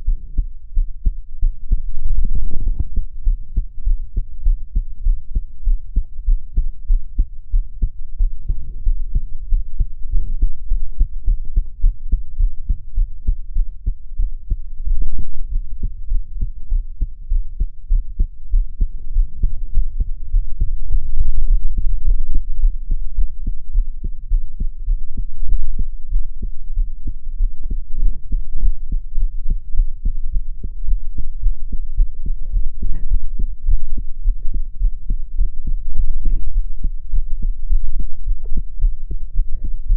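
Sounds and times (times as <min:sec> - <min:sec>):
heartbeat thumps: 0:00.0 - 0:39.9.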